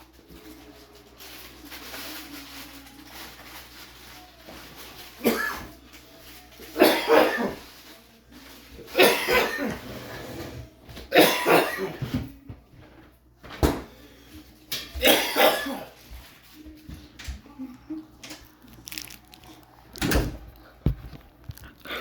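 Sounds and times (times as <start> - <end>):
person coughing: 5.2 - 5.7, 6.8 - 7.6, 9.0 - 9.8, 11.1 - 12.0, 15.0 - 16.0.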